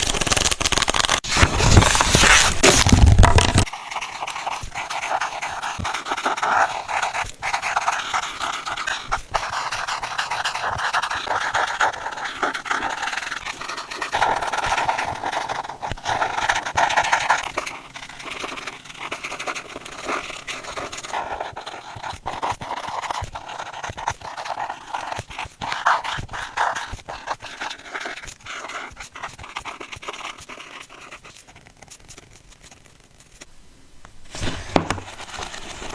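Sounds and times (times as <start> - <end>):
loud rubbing noise: 0.0 - 3.7
pen scratching on paper: 0.0 - 33.5, 34.3 - 35.9.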